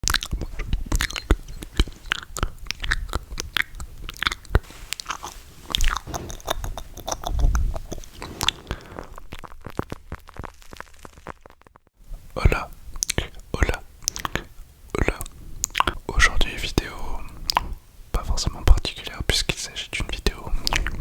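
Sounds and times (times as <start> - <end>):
wet mouth clicks and smacks: 0.0 - 10.5, 12.5 - 16.0, 17.3 - 17.8, 20.6 - 21.0.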